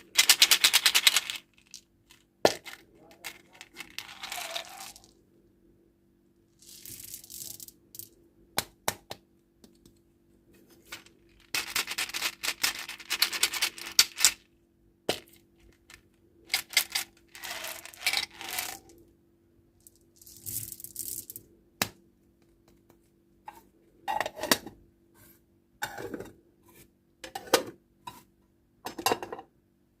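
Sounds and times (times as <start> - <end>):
small hard pieces clattering: 0.0 - 5.1, 6.6 - 8.1, 10.9 - 14.4, 15.1 - 18.9, 19.9 - 21.4
plastic wrappers crinkling and tearing: 3.3 - 5.0.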